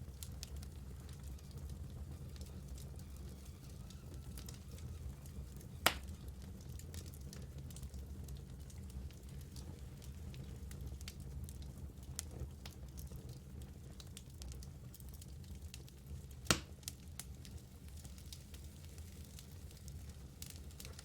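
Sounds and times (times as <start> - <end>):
low rumble of flames: 0.0 - 21.0
wood fire crackling: 0.0 - 21.0
loud pop of fire: 5.8 - 6.2, 16.4 - 16.8.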